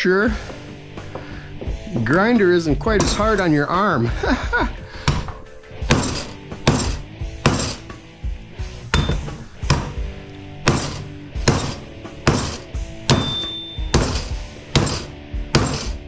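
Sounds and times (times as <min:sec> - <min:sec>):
hammer striking metal with ring: 0:05.1 - 0:08.0, 0:08.9 - 0:16.0.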